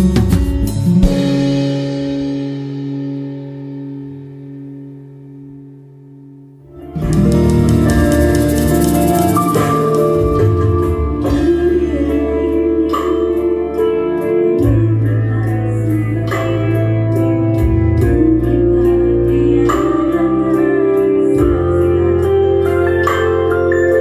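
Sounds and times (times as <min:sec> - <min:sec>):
bass line: 0:00.0 - 0:24.0
organ-like keyboard chords: 0:00.0 - 0:24.0
steady drum beat: 0:07.0 - 0:13.5.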